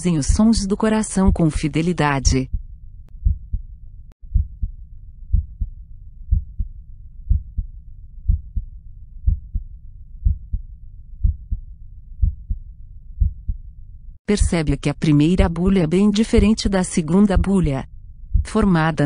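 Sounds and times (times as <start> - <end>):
steady low rumble: 0.0 - 19.0
heartbeat lub-dub: 0.3 - 0.6, 1.2 - 1.6, 2.2 - 12.6, 13.2 - 13.6, 16.3 - 16.7, 17.3 - 18.6.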